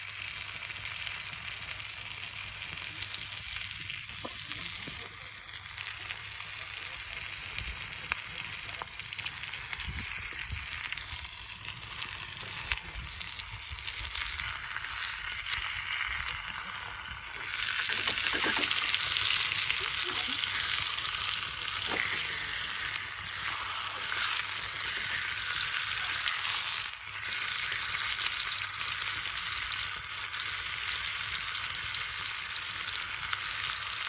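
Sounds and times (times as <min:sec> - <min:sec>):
chicken sizzling in a pan: 0:00.0 - 0:34.0.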